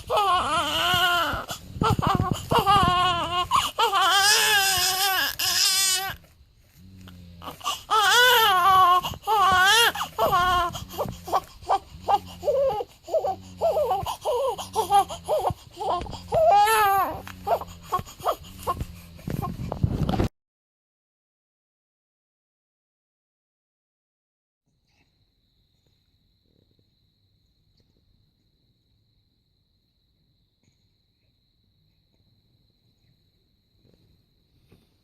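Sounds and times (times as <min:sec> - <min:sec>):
newborn baby crying: 0:00.0 - 0:06.2, 0:07.4 - 0:19.5.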